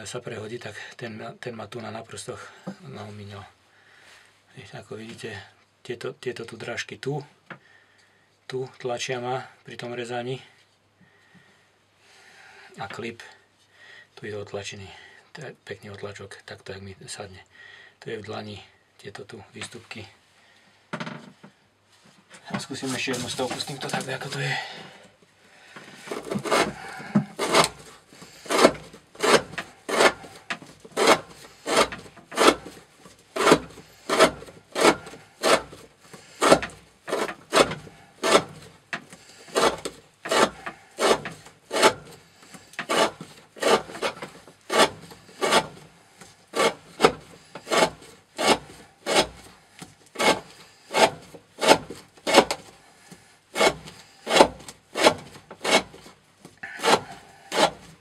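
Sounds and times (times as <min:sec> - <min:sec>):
knife slicing through rope: 0:22.7 - 0:24.5, 0:26.0 - 0:45.8, 0:46.5 - 0:52.8, 0:53.5 - 0:58.0.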